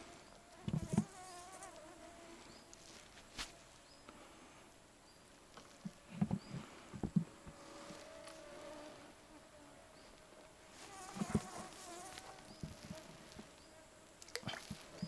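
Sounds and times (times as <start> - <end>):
flying insect buzzing: 0.0 - 3.7, 7.4 - 15.0.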